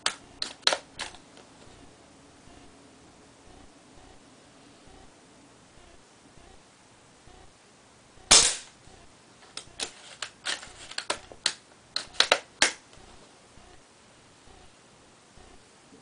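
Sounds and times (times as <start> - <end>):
airsoft rifle shot crack: 8.3 - 8.7.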